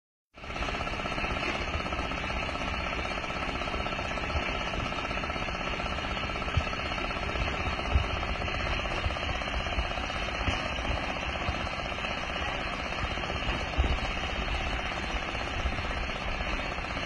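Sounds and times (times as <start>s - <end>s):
machine engine rattling: 0.4s - 17.0s.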